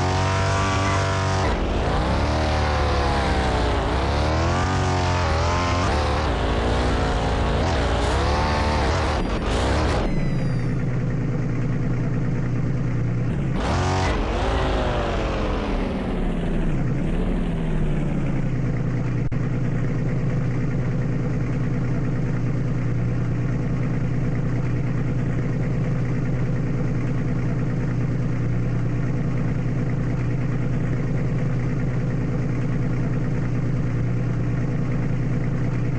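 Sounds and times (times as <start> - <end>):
car engine revving: 0.0 - 10.8, 13.3 - 18.8.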